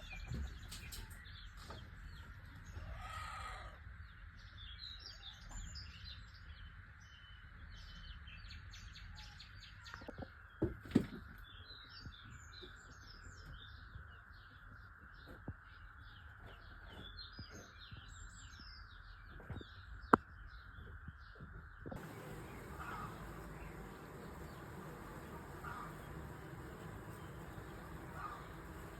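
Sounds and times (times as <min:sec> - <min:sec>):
small birds chirping: 0:00.0 - 0:28.9
steady background hiss: 0:22.0 - 0:28.9
steady noise: 0:22.0 - 0:28.9.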